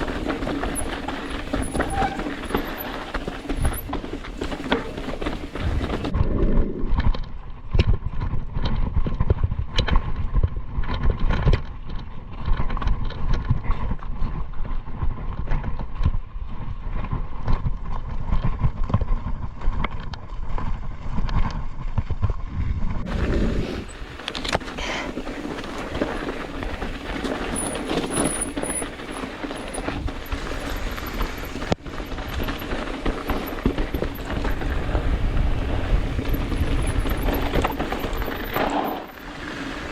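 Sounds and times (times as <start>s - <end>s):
mountain bike clattering over trail: 0.0s - 6.2s, 23.0s - 39.9s
wind rumble on microphone: 0.0s - 39.9s.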